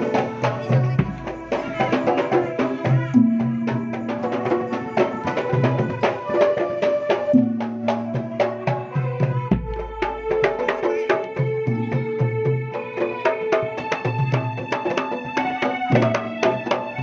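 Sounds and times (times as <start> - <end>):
fast drum strokes: 0.0 - 17.0.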